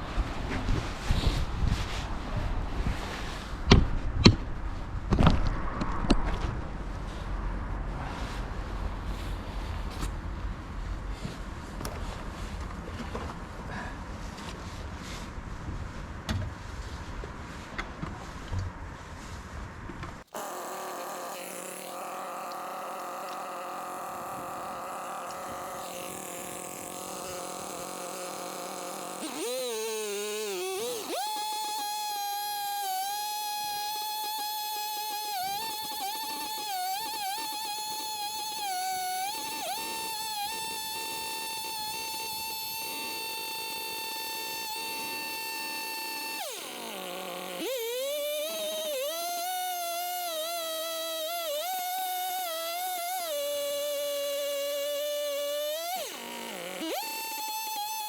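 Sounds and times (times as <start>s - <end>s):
chainsaw milling a log: 20.3s - 58.0s.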